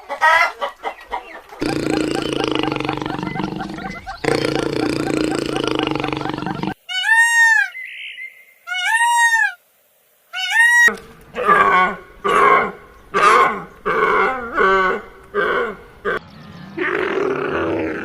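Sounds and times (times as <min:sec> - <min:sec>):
high arching animal calls: 0:00.0 - 0:09.6, 0:10.3 - 0:18.0.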